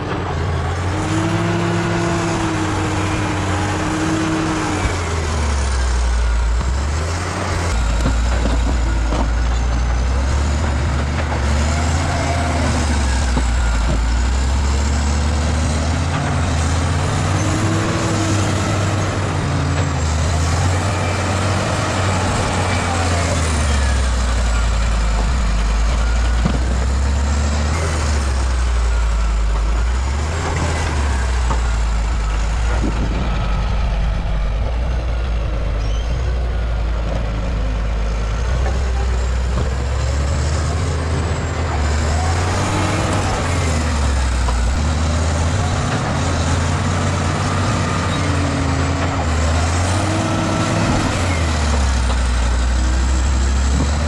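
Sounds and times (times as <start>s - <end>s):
bulldozer diesel engine working: 0.0s - 54.0s.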